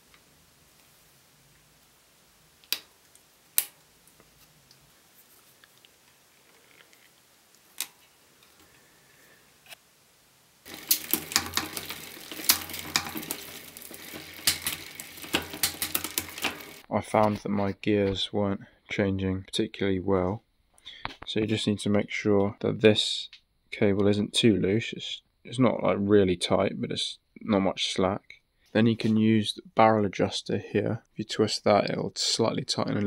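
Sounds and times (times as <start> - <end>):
small parts and tools clicking: 10.6 - 16.9
rapid mechanical clicking: 10.7 - 16.9.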